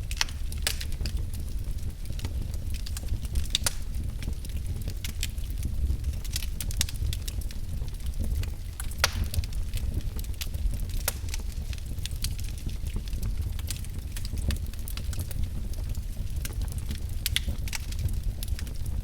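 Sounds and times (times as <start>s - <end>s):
wood fire crackling: 0.0s - 19.0s
sharp pops of fire: 0.1s - 1.2s, 8.8s - 9.8s, 10.4s - 12.3s.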